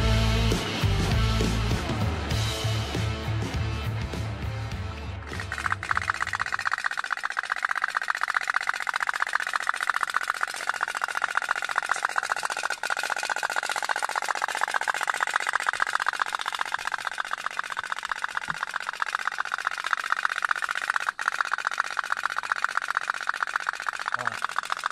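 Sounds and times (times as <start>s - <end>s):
toy steam boat popping: 5.3s - 24.9s.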